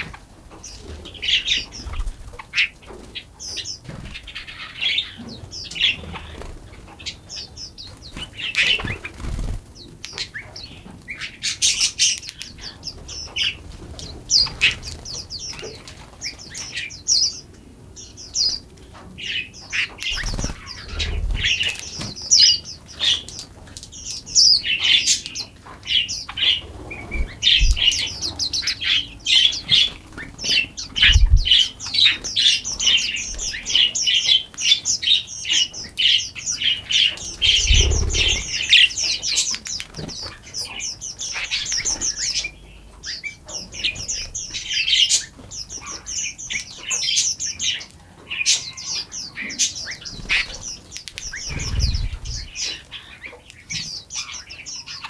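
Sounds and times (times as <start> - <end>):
songbirds chirping and trilling: 0.0 - 55.0
low thumps: 31.0 - 31.6.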